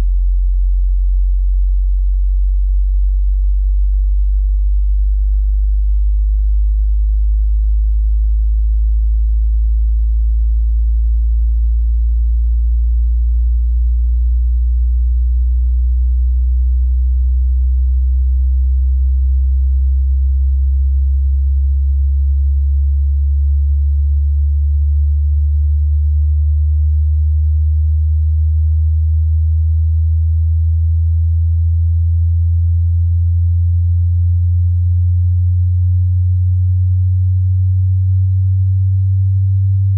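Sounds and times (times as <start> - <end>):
sine wave test tone rising in pitch: 0.0 - 39.9.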